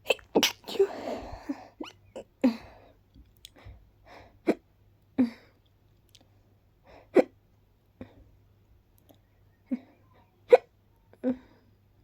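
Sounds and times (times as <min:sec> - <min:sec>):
woman hiccuping and sneezing: 0:00.0 - 0:01.1
breaths: 0:00.8 - 0:01.8, 0:02.5 - 0:04.4.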